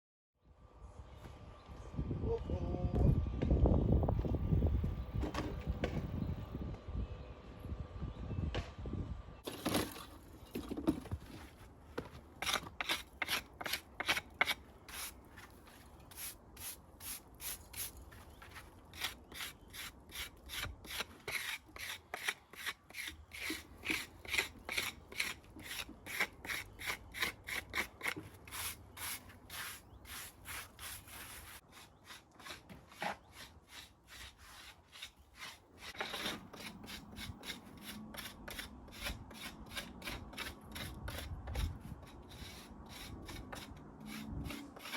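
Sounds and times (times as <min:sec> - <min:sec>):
hand tool scraping on masonry: 0:09.5 - 0:44.9.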